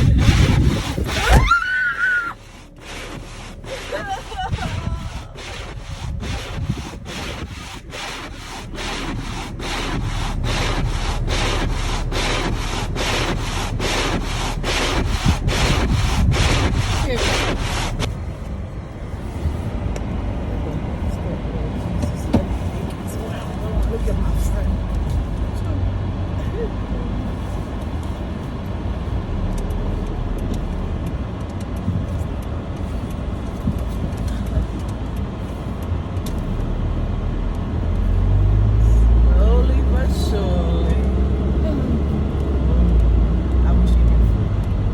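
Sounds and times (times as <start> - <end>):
snow brushed off car: 0.0 - 18.2, 38.2 - 41.1
car engine and road noise: 0.0 - 44.9
low rumble: 0.0 - 44.9.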